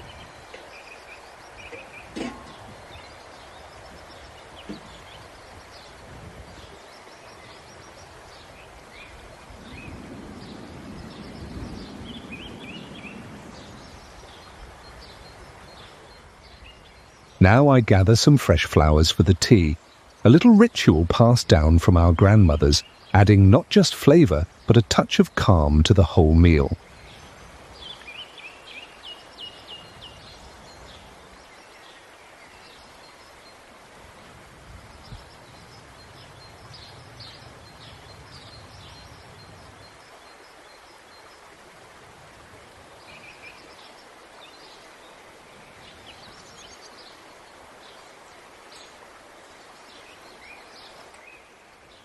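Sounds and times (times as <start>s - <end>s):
small birds chirping: 0.0s - 33.7s, 34.8s - 41.5s, 42.9s - 52.0s
steady background hiss: 0.0s - 52.0s.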